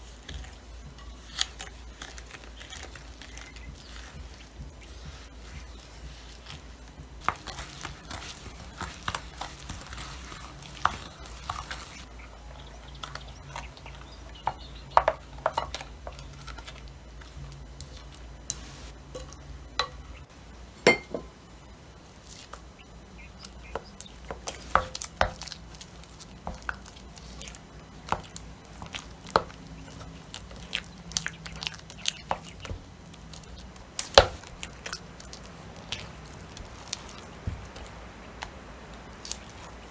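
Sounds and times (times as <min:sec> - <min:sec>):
low steady hum: 0:00.0 - 0:39.9
utensils clinking against dishes: 0:19.1 - 0:20.2.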